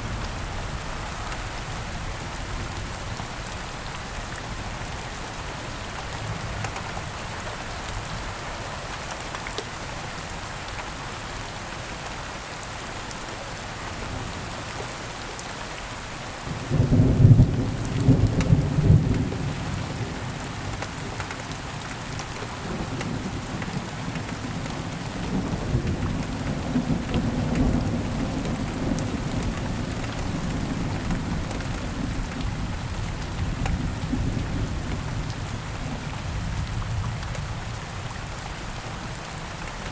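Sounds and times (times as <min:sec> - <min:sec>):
steady rain falling: 0:00.0 - 0:39.9
thunderclap and rumble: 0:16.5 - 0:20.8, 0:22.6 - 0:38.1.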